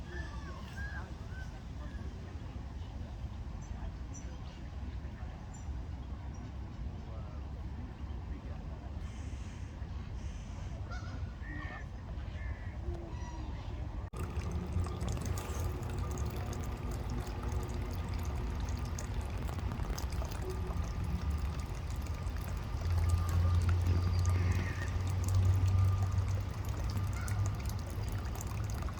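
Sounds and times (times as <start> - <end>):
steady low hum: 13.9 - 28.9
water trickling: 14.1 - 28.9.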